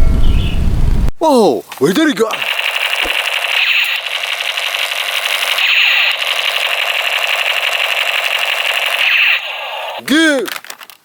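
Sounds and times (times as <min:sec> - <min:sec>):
automatic gunfire rattle: 0:02.3 - 0:11.0.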